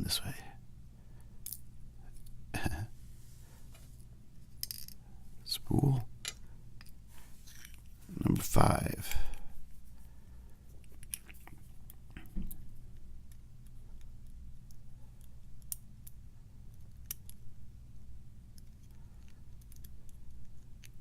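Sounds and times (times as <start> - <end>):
faint low hum: 0.0 - 21.0
small metallic clicks: 18.5 - 21.0.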